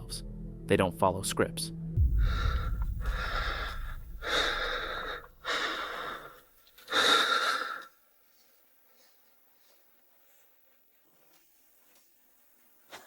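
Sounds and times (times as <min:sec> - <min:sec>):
person breathing heavily: 0:02.0 - 0:09.2.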